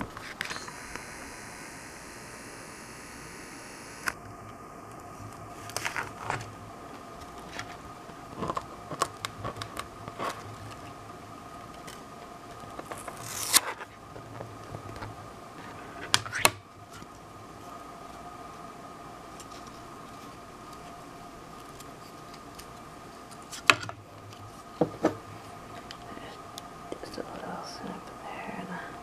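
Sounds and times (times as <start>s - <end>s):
printer hum: 0.0s - 13.3s.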